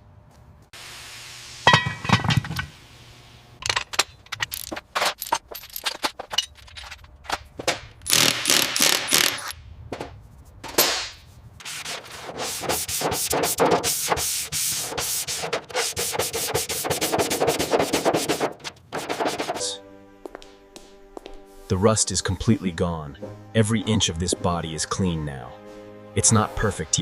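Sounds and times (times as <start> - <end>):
metal clank ringing: 1.7 - 2.6
tools scraping and tapping metal: 1.7 - 2.7, 3.6 - 11.0.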